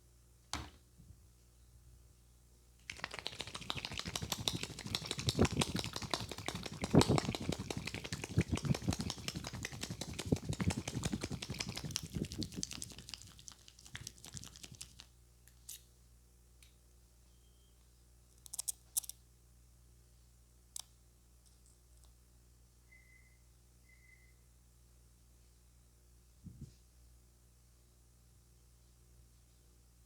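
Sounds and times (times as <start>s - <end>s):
hands tapping and rubbing head: 2.9s - 15.0s.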